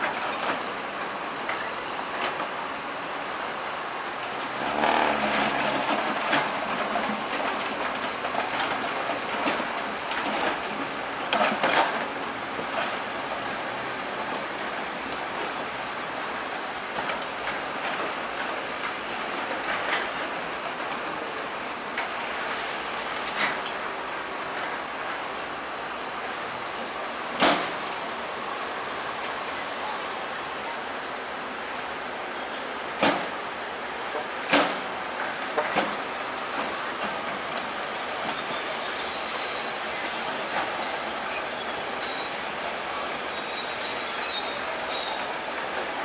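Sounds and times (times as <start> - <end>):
faint high squeal: 0.2 - 5.7, 16.0 - 31.5, 32.3 - 35.2, 35.9 - 46.0
bulldozer engine running: 4.2 - 19.8.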